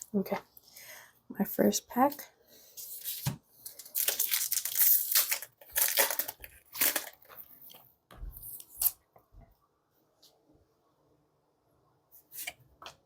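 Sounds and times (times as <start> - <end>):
foil wrapper tearing: 3.7 - 7.6.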